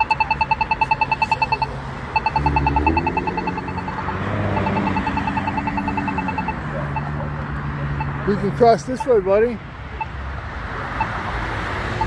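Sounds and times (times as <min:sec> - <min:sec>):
crossing button rapid ticking: 0:00.0 - 0:07.1
low traffic rumble: 0:00.0 - 0:12.0.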